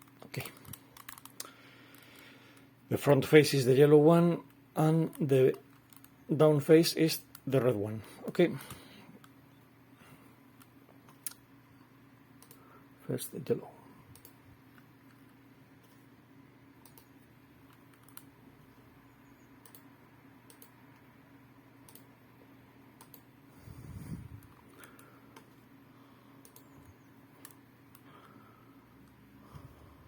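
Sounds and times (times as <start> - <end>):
computer mouse clicks: 0.5 - 2.2, 12.4 - 12.6, 14.1 - 15.2, 16.8 - 18.3, 19.6 - 20.8, 21.8 - 22.1, 23.0 - 23.3, 24.4 - 25.6, 26.4 - 28.0.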